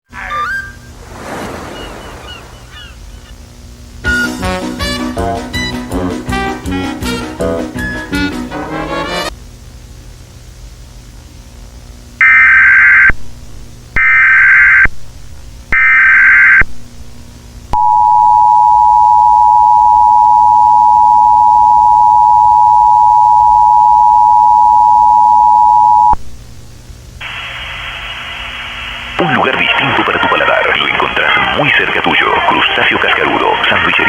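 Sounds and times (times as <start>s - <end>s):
two-tone attention signal: 17.8s - 26.2s
steady hiss: 26.2s - 34.0s.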